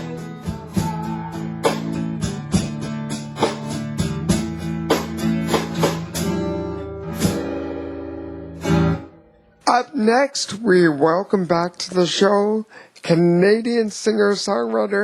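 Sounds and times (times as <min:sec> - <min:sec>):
acoustic guitar strumming chords: 0:00.0 - 0:09.9.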